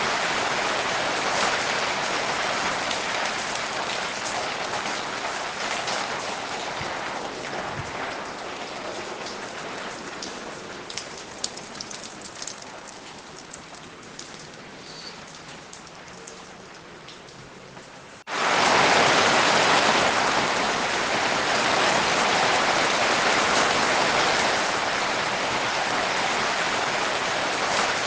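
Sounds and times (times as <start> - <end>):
steady rain hiss: 0.0 - 28.0
raindrops ticking: 2.9 - 18.3.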